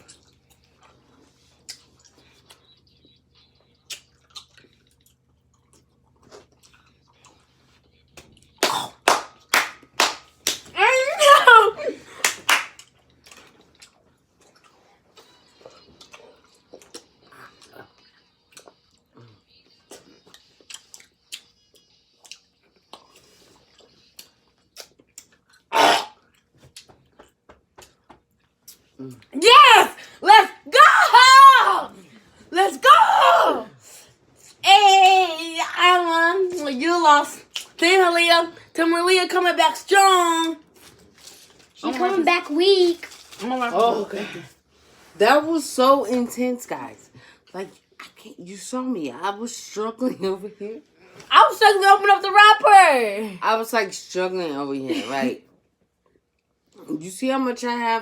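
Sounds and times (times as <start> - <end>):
quiet chewing: 0.0 - 8.6, 12.8 - 29.3
small crinkles: 40.6 - 43.9.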